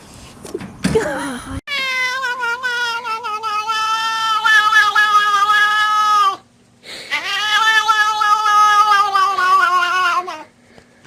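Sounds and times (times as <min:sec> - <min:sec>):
cat yowling: 0:01.7 - 0:06.4, 0:07.1 - 0:10.5.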